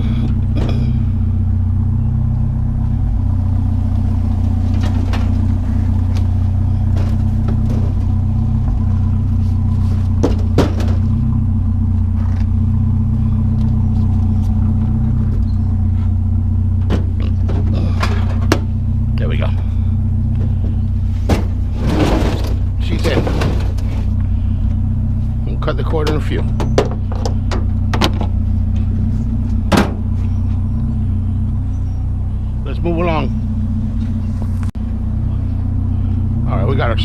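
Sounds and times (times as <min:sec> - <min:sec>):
knocks and clunks: 0:00.0 - 0:01.2, 0:04.2 - 0:12.6, 0:13.5 - 0:24.8, 0:25.5 - 0:30.7
vehicle engine idling: 0:00.0 - 0:37.0.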